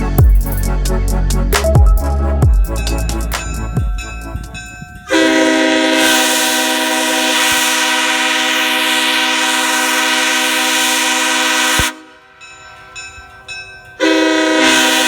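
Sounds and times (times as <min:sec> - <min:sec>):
locomotive air horn chord: 0:02.0 - 0:12.4, 0:14.0 - 0:15.0.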